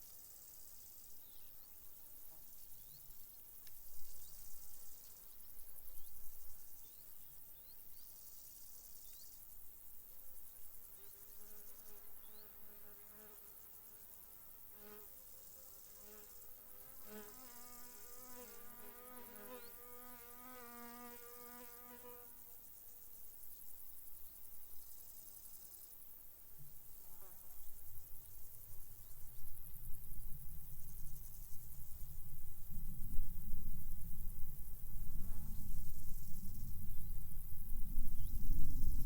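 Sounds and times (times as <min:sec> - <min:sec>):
faint crickets chirring: 0:00.0 - 0:39.0
flying insect buzzing: 0:10.9 - 0:22.4.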